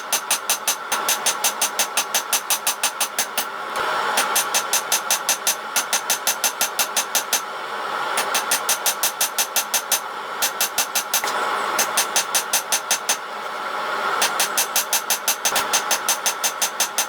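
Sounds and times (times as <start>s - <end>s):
steady background roar: 0.0s - 17.0s.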